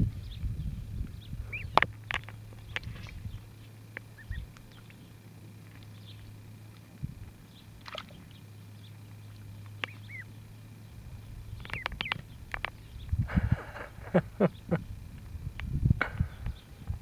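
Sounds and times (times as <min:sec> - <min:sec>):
ducklings peeping: 0:00.0 - 0:15.1.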